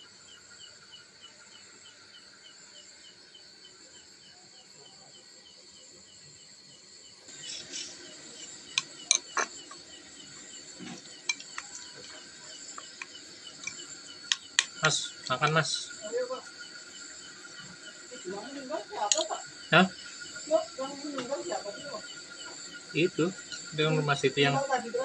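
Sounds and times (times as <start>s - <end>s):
crickets chirping: 0.0s - 25.0s
spoon clinking on a plate: 8.8s - 9.8s, 11.2s - 11.8s, 13.0s - 14.8s, 19.1s - 19.3s.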